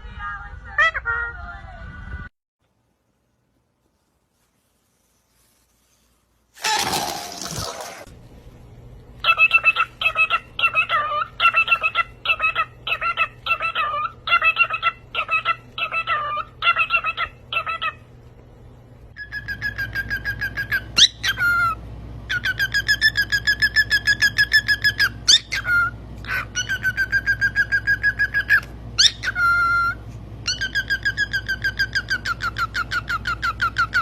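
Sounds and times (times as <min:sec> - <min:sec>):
parrot whistling repeated notes: 0:19.2 - 0:34.0.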